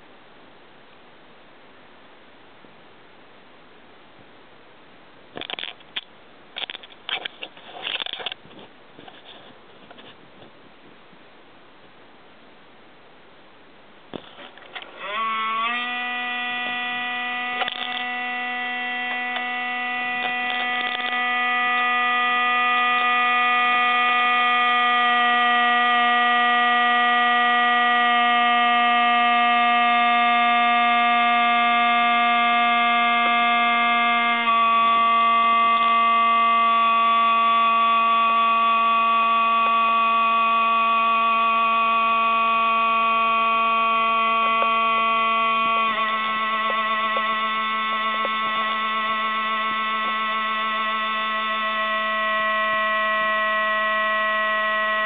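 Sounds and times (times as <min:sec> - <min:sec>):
hard-disk recorder whining hum: 0:00.0 - 0:55.0.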